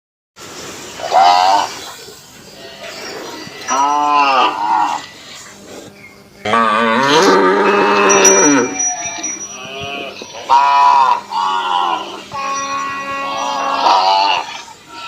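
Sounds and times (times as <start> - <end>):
cow mooing: 2.6 - 5.1, 6.4 - 15.0.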